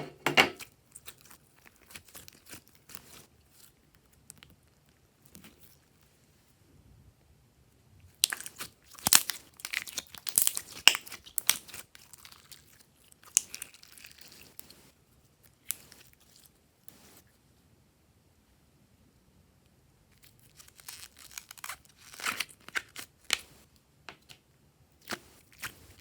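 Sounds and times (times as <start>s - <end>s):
slime crackling and popping: 0.6s - 6.1s, 8.1s - 14.8s, 15.4s - 16.4s, 20.2s - 23.5s.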